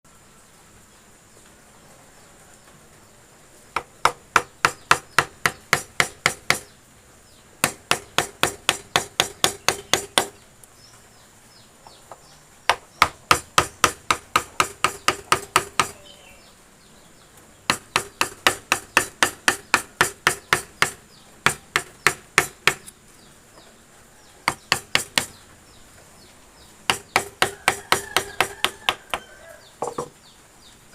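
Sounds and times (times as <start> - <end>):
hammer striking chisel: 3.8 - 6.7, 7.6 - 10.4, 12.7 - 16.0, 17.7 - 22.9, 24.5 - 25.4, 26.9 - 29.2, 29.8 - 30.1.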